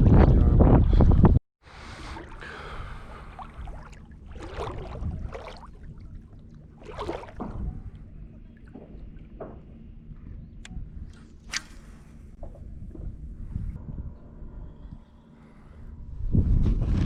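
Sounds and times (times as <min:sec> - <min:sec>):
wind on microphone: 0:00.0 - 0:01.4, 0:02.1 - 0:17.0
water sloshing from wading: 0:01.7 - 0:13.5.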